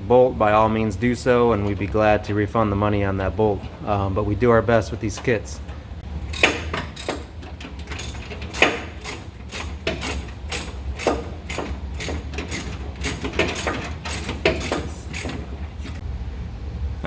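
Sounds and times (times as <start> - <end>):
steady low hum: 0.0 - 17.0
ratchet and metal tools clanking: 4.7 - 16.0.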